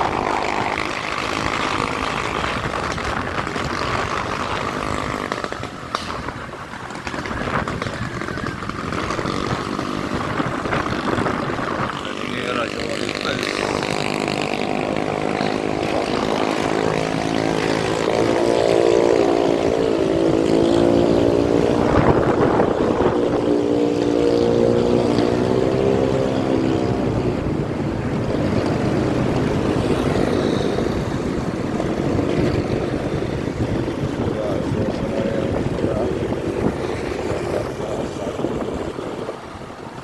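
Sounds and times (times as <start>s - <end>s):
vehicle engine running: 0.0s - 40.0s
wind and road noise: 0.0s - 40.0s.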